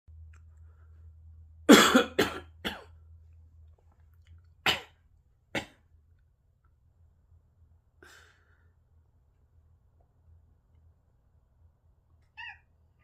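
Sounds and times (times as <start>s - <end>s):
person coughing: 1.7s - 3.0s.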